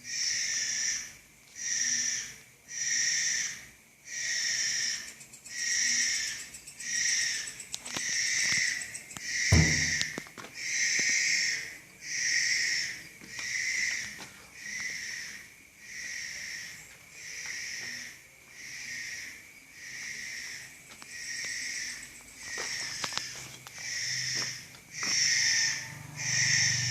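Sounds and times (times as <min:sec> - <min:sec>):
short knock: 0:09.5 - 0:10.3.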